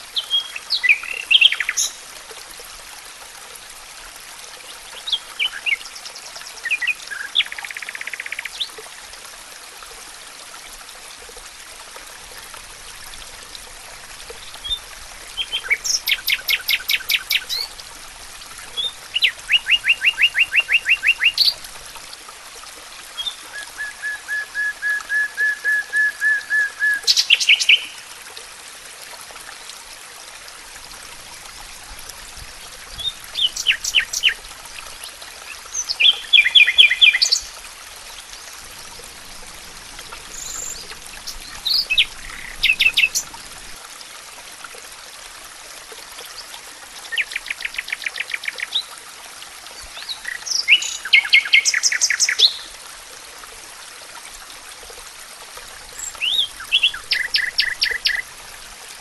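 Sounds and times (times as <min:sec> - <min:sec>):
songbird singing: 0:00.2 - 0:02.0, 0:14.4 - 0:17.8, 0:18.8 - 0:21.6, 0:23.2 - 0:28.1, 0:32.9 - 0:37.6, 0:40.0 - 0:43.6, 0:49.8 - 0:52.7, 0:56.0 - 0:58.3.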